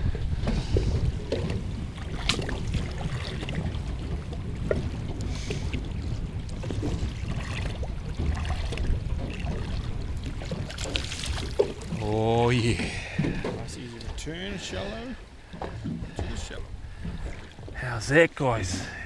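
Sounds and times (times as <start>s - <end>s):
wind rumbling on microphone: 0.0s - 13.9s
water lapping around boat: 0.0s - 19.0s.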